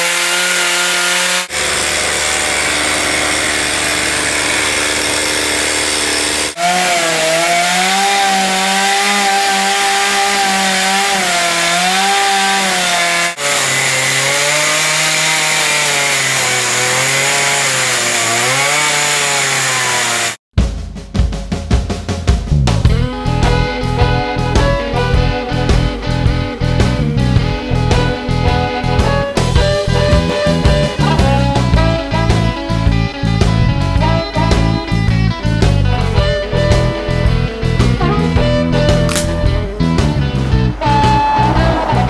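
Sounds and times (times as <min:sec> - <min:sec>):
chainsaw carving into wood: 0:00.0 - 0:20.4, 0:36.7 - 0:39.4.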